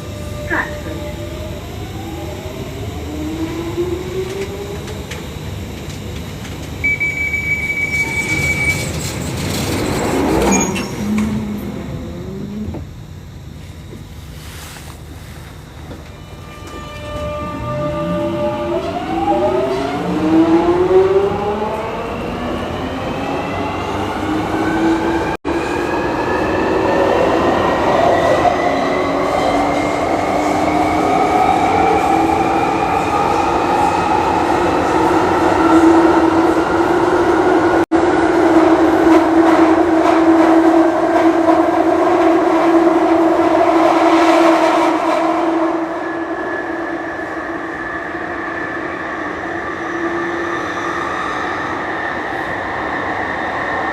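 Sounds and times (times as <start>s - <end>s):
train traction motor whine: 0.0s - 42.0s.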